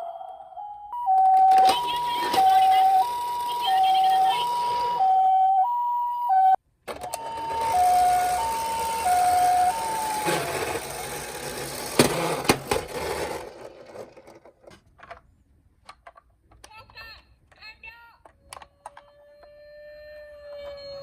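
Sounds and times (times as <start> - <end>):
toy siren two-tone: 0.0 - 11.2, 18.4 - 21.0.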